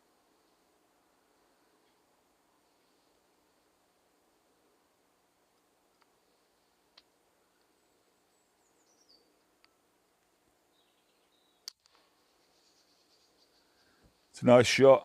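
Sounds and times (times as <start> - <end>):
faint high bird chirps: 8.2 - 9.4, 10.7 - 14.0.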